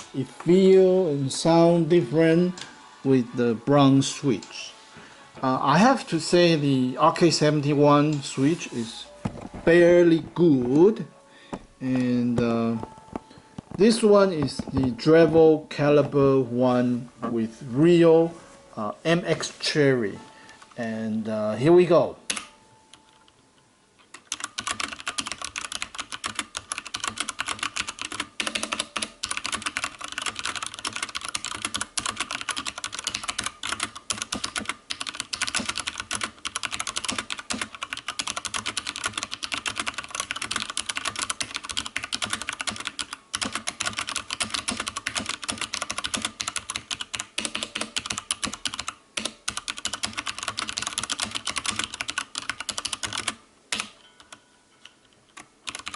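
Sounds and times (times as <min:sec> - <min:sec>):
mechanical keyboard typing: 0:24.1 - 0:54.4, 0:55.3 - 0:55.9.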